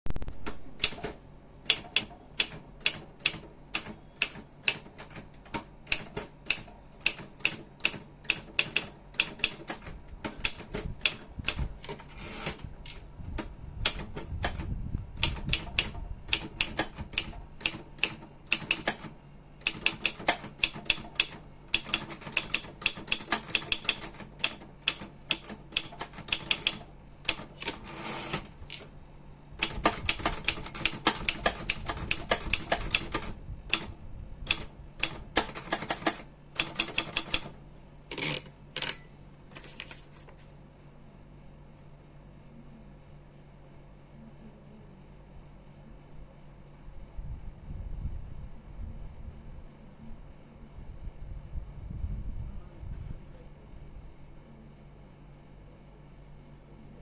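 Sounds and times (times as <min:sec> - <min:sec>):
typewriter keys clacking: 0:34.5 - 0:37.5.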